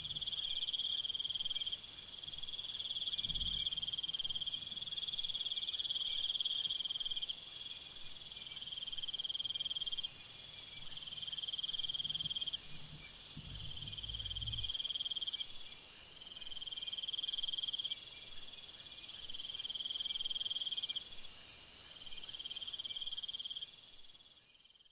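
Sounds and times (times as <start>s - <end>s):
high-pitched insect chorus: 0.0s - 24.9s
crickets trilling: 8.7s - 18.0s.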